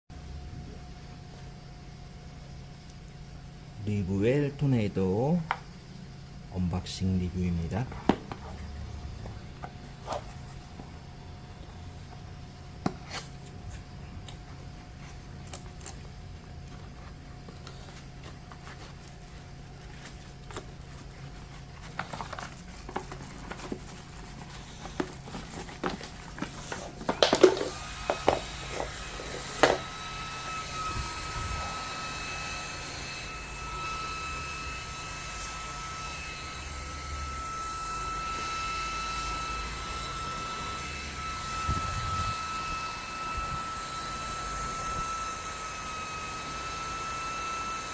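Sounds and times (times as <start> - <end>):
handheld fan motor whining: 6.6 - 47.9
packaging rustling: 14.8 - 29.9.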